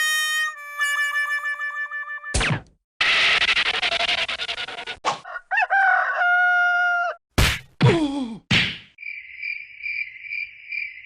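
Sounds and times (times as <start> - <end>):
rooster crowing: 5.2 - 7.2.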